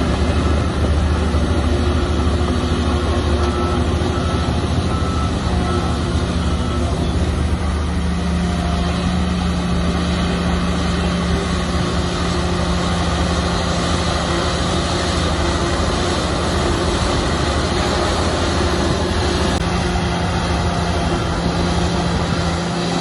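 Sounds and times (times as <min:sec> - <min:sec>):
diesel engine drone: 0:00.0 - 0:23.0.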